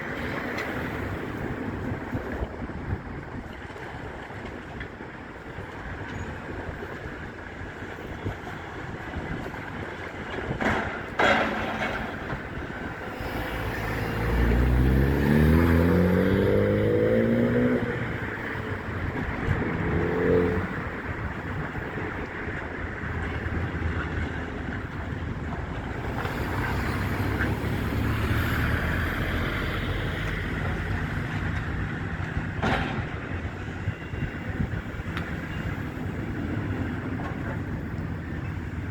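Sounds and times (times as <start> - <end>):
wind noise: 0.0 - 38.9
vehicle engine accelerating: 13.1 - 18.6, 19.5 - 20.9.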